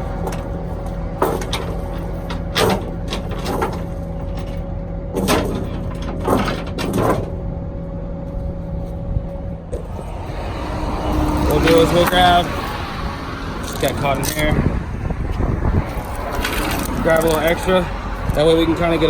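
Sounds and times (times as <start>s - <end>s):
engine idling: 9.4s - 19.0s
chain clanking and rattling: 15.8s - 19.0s.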